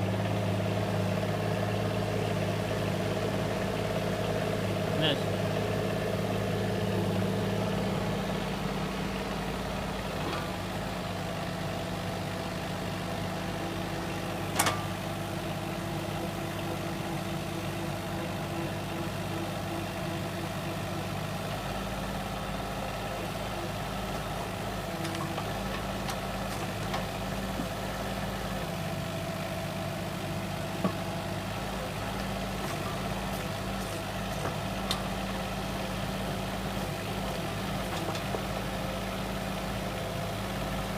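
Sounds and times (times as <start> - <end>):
heavy machine engine humming: 0.0 - 40.9
small click: 14.6 - 14.8.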